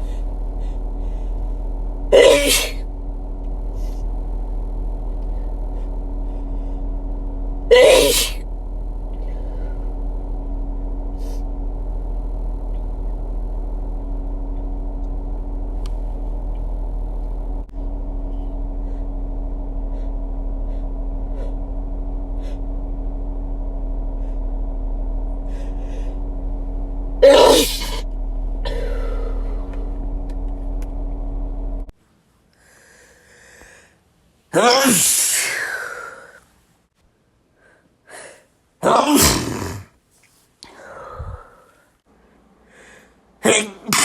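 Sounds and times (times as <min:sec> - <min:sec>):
breathy sound: 0:00.0 - 0:13.2, 0:23.7 - 0:30.8, 0:40.6 - 0:41.9, 0:42.6 - 0:43.2
steady low hum: 0:00.0 - 0:39.8, 0:40.7 - 0:44.0
person sneezing: 0:02.2 - 0:02.8, 0:07.7 - 0:08.4, 0:34.6 - 0:36.1, 0:38.8 - 0:39.9, 0:43.4 - 0:44.0.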